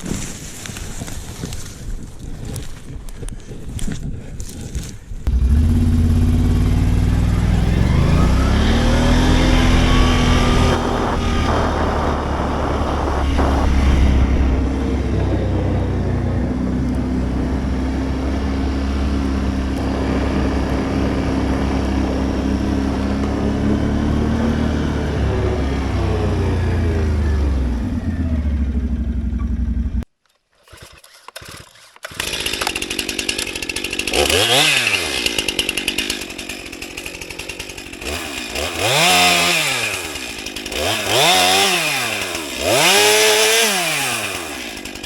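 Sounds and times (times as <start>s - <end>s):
atv engine revving: 5.3s - 30.0s, 33.5s - 35.8s, 38.0s - 44.7s.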